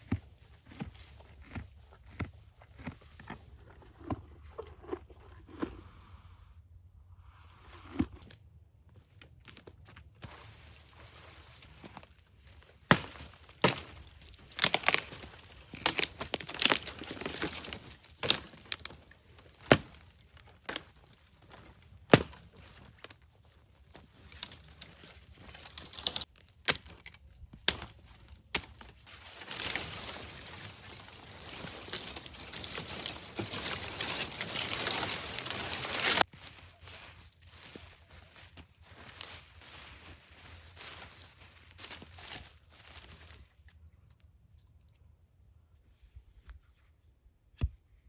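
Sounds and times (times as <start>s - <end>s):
dry wood cracking: 9.2s - 43.8s
rustling scraping noise: 10.2s - 21.8s, 27.9s - 43.5s.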